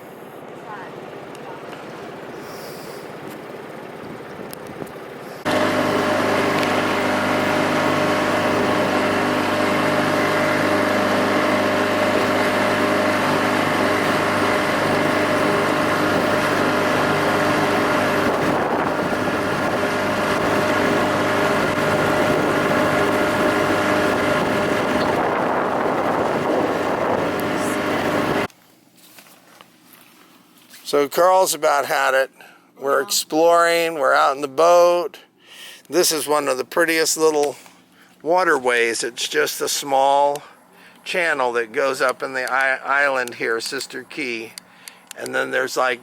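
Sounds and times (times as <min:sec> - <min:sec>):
motorboat engine running: 0:00.0 - 0:28.5
water rushing: 0:05.5 - 0:28.5
wind noise: 0:13.8 - 0:28.5.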